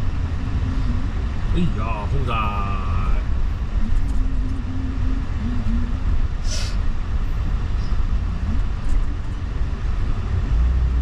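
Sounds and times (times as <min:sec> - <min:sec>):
motor vehicle rumble: 0:00.0 - 0:11.0
short hiss: 0:06.4 - 0:06.8.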